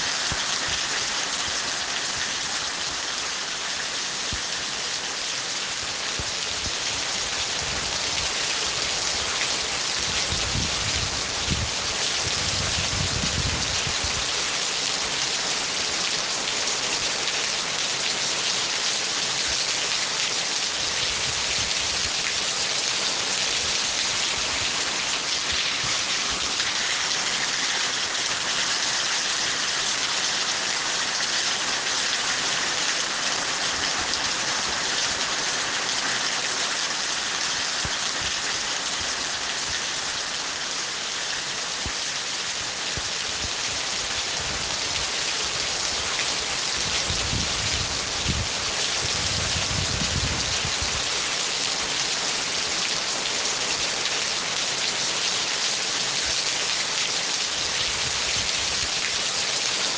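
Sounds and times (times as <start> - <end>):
heavy rain pattering: 0.0 - 59.9.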